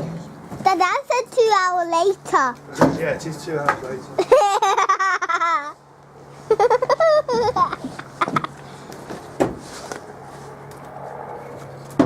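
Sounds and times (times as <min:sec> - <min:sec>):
child laughing in squeals: 0:04.2 - 0:05.8, 0:06.5 - 0:08.6.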